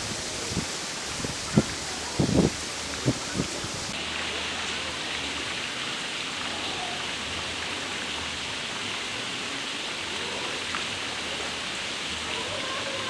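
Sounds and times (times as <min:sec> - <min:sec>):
running water hiss: 0:00.0 - 0:13.0.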